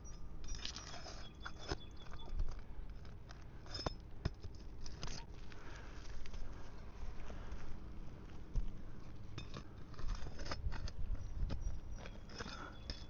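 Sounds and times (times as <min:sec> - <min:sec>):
pry bar scraping under shingles: 0:08.6 - 0:13.0.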